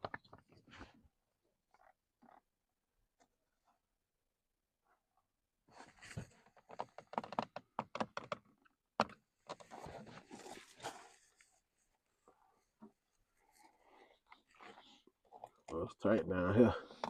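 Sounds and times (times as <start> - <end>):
rustling and scraping: 9.4 - 15.6.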